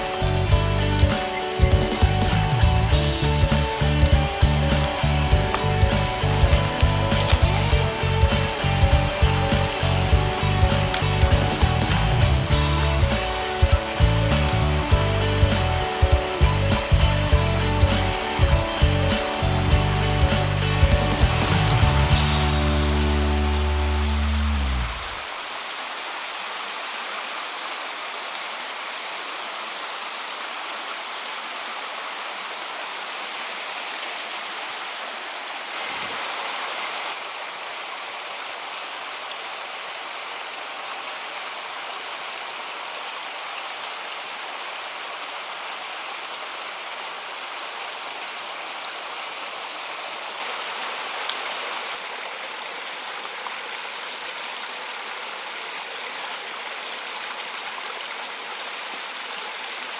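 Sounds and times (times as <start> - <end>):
stream rushing over rocks: 0.0 - 59.9.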